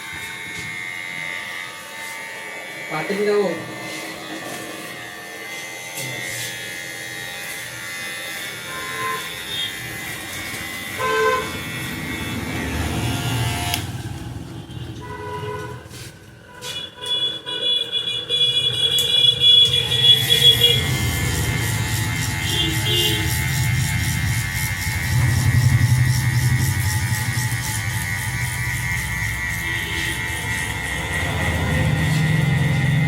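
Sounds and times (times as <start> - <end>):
street traffic: 3.8 - 33.0
held horn-like tone: 8.6 - 13.8, 14.7 - 33.0
vehicle horn toots: 8.7 - 9.8, 11.0 - 11.6, 14.7 - 15.9, 16.5 - 24.2, 29.2 - 33.0.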